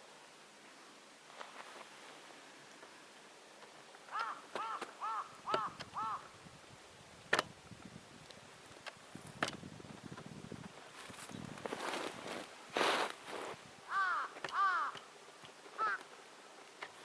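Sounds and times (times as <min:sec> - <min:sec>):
crow cawing: 0:04.1 - 0:06.3, 0:13.9 - 0:15.1, 0:15.8 - 0:16.1.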